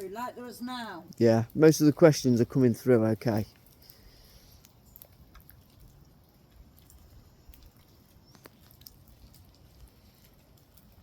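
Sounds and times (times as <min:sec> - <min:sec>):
rain dripping: 0:00.0 - 0:11.0.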